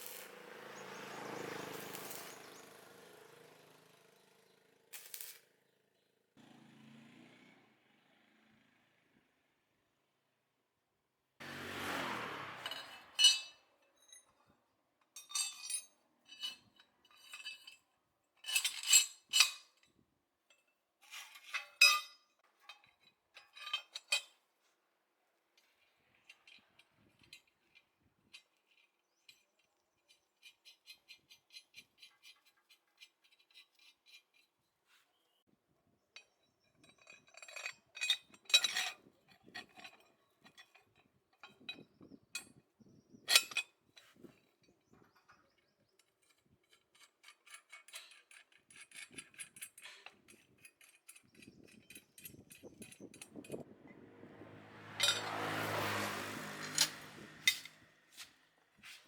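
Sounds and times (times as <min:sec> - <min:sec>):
metal tools clinking: 0:00.0 - 0:00.3, 0:12.6 - 0:14.5, 0:15.1 - 0:19.9, 0:21.1 - 0:24.4, 0:36.2 - 0:42.5, 0:46.0 - 0:53.6, 0:54.9 - 0:58.3.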